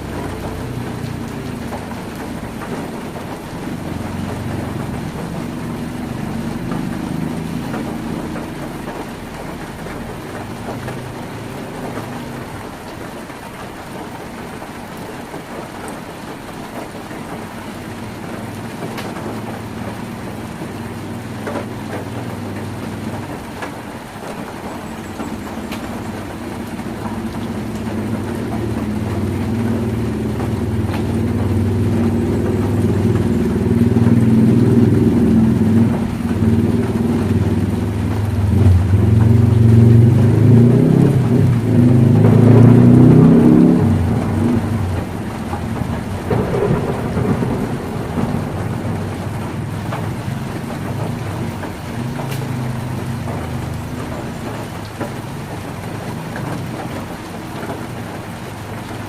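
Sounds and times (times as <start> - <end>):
low engine-like hum: 0.0 - 59.0
rain drumming on a tin roof: 0.0 - 59.0.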